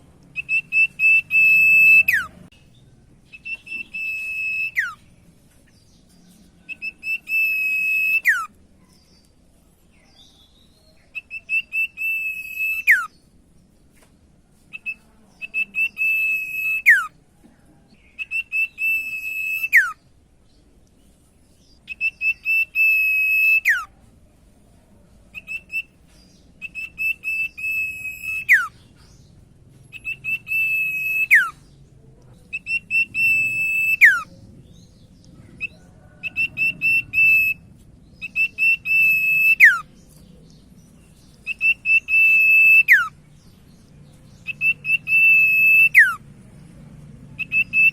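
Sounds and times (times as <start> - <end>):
bird whistled calls: 0.4 - 2.4, 3.3 - 5.1, 6.6 - 8.5, 11.1 - 13.2, 14.7 - 17.1, 18.2 - 20.0, 21.8 - 23.9, 25.3 - 26.0, 26.6 - 28.8, 29.9 - 31.7, 32.5 - 34.3, 35.6 - 40.0, 41.2 - 43.2, 44.3 - 46.2, 47.4 - 47.9.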